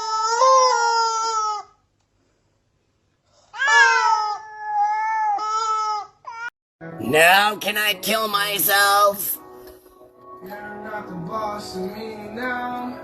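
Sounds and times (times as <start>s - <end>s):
cat yowling: 3.6s - 6.5s.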